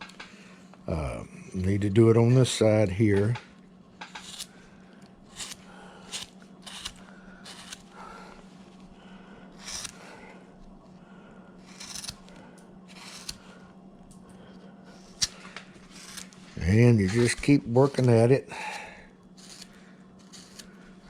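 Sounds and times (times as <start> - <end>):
steady low hum: 0.0 - 21.0
carving tool slicing wood: 4.0 - 4.5, 5.3 - 7.9, 9.6 - 10.0, 11.6 - 12.2, 12.9 - 13.4, 15.1 - 16.4, 19.4 - 20.8.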